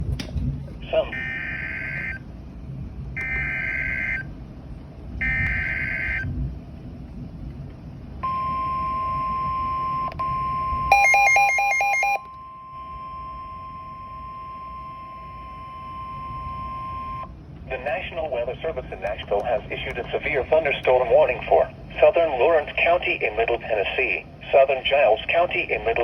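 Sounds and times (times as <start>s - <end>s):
steady attention tone: 5.2s - 6.3s, 8.2s - 26.0s.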